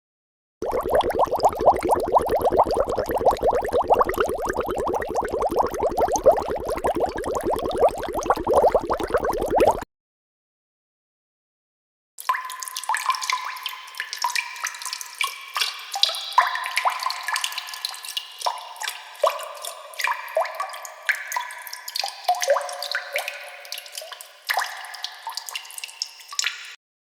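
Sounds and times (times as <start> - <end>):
water drops plinking: 0.6 - 9.8.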